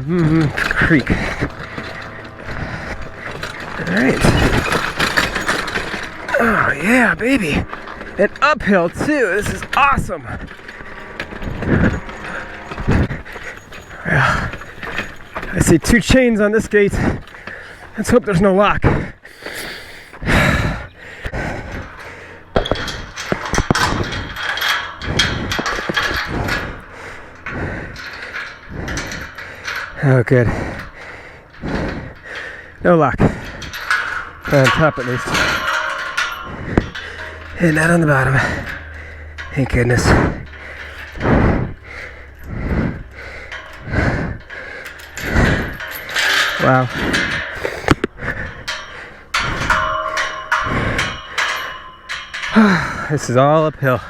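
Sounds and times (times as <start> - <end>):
chains clanking against gate: 0.0 - 54.0
man breathing hard: 17.0 - 18.0, 18.9 - 34.4, 38.4 - 39.5, 40.2 - 49.8, 50.6 - 53.1.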